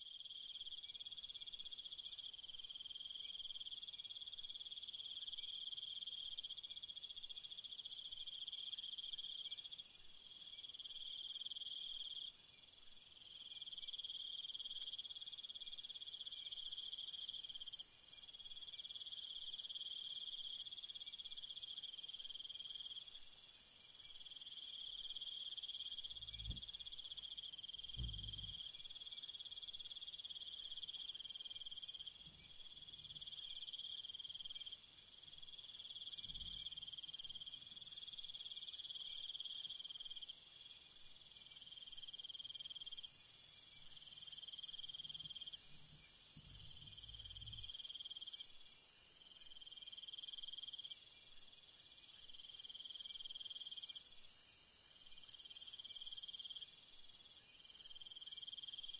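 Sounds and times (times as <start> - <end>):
dull low thumps: 27.9 - 28.6.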